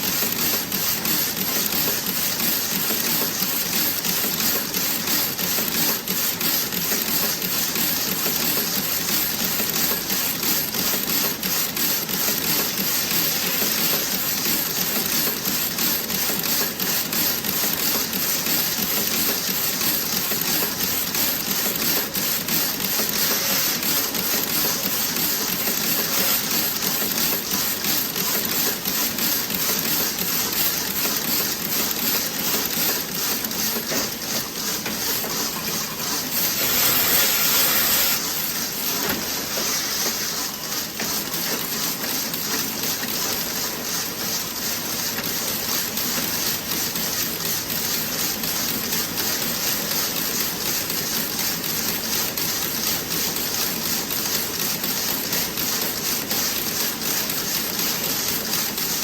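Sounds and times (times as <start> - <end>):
knitting machine clicking rattle: 0.0 - 59.0
mechanical hum: 17.3 - 59.0.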